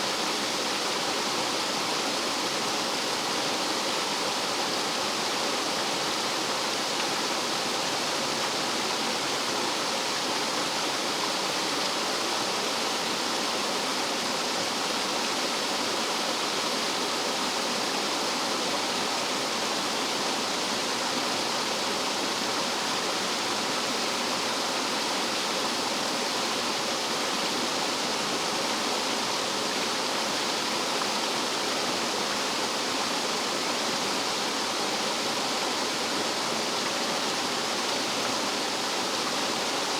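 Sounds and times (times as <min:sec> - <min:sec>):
stream water rushing over rocks: 0:00.0 - 0:39.9.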